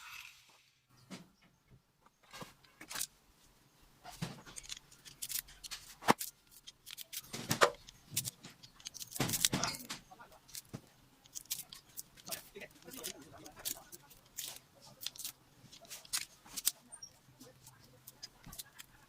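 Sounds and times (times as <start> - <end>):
metal wire clicks and scrapes: 4.0 - 19.0.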